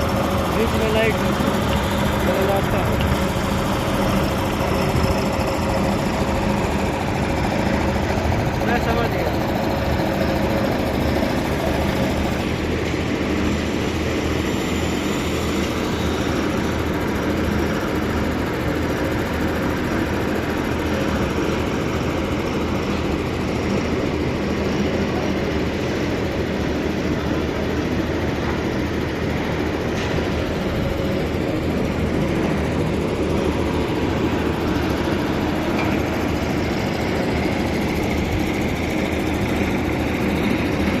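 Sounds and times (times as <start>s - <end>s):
engine running steadily: 0.0s - 41.0s.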